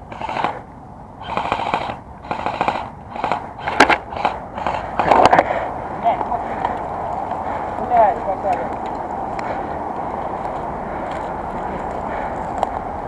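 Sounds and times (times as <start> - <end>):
airsoft gun bursts: 0.0 - 0.6, 1.2 - 5.4.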